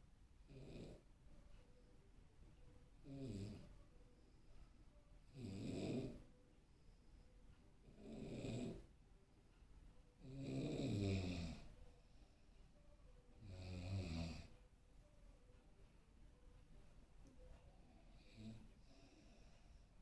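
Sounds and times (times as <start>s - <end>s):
person snoring: 10.2s - 11.6s.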